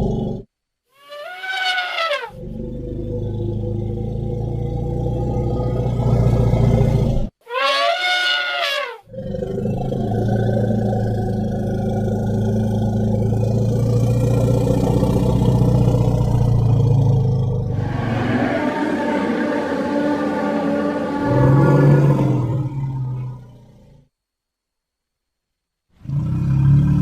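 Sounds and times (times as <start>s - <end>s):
elephant trumpet call: 1.0s - 2.4s, 7.4s - 9.1s, 17.7s - 23.0s
elephant low rumble: 2.4s - 7.3s, 9.1s - 24.0s.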